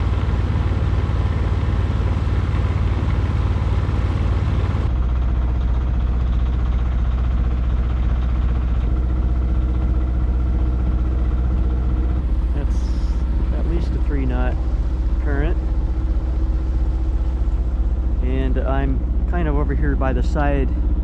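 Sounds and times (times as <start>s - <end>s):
boat engine droning: 0.0s - 21.0s.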